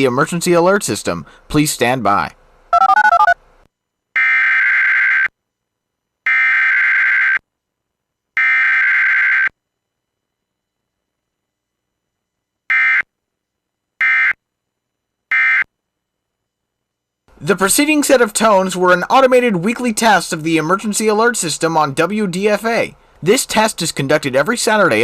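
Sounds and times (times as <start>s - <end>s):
digital data bursts: 2.8s - 3.4s.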